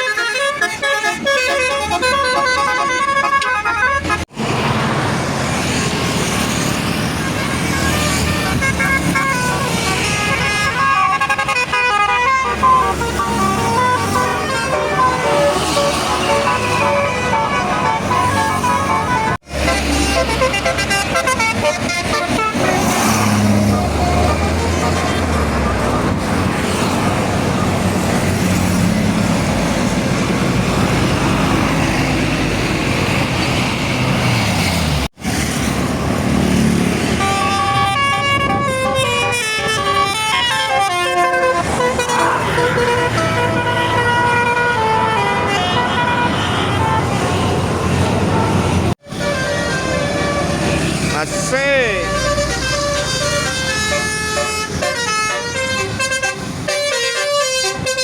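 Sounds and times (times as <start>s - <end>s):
multi-tone bus horn tunes: 0.0s - 4.4s, 7.1s - 26.1s, 37.0s - 58.0s
bus engine rumble: 0.0s - 58.0s
traffic rumble: 0.0s - 58.0s.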